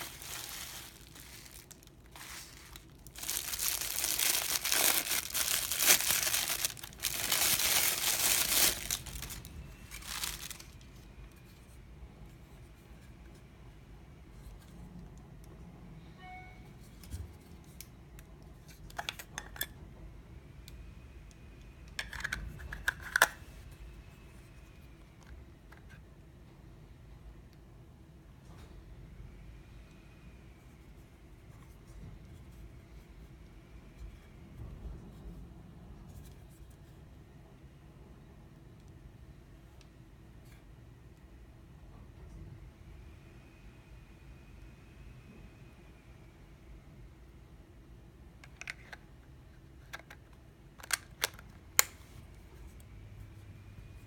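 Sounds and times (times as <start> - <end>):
packaging torn and crinkled: 0.0 - 10.9.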